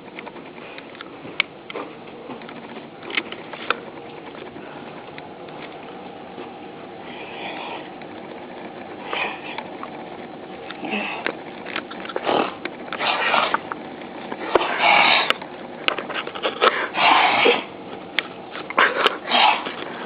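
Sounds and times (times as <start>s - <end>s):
loud sniffing: 12.2s - 13.6s, 14.5s - 15.4s, 16.7s - 17.7s, 18.8s - 19.8s.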